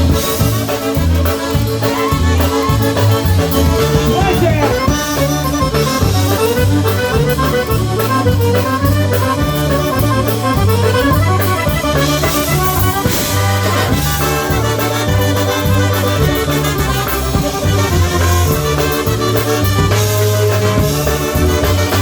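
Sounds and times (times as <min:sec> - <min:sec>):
accordion: 0:00.0 - 0:22.0
bass line: 0:00.0 - 0:22.0
drum beat: 0:00.0 - 0:22.0
polka band playing: 0:00.0 - 0:22.0.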